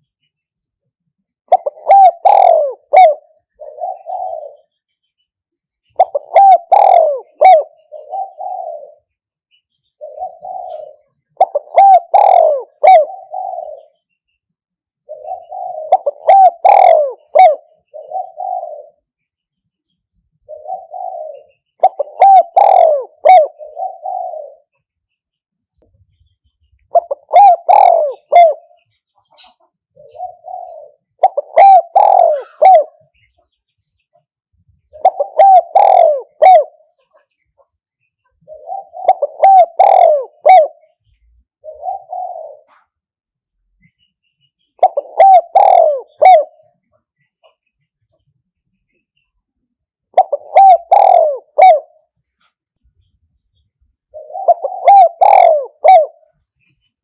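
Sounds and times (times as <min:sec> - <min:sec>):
dove cooing: 0:01.4 - 0:04.8, 0:05.9 - 0:09.2, 0:09.9 - 0:14.1, 0:15.0 - 0:19.2, 0:20.4 - 0:24.9, 0:26.8 - 0:33.6, 0:34.8 - 0:43.0, 0:44.7 - 0:48.2, 0:50.1 - 0:52.2, 0:54.0 - 0:57.0.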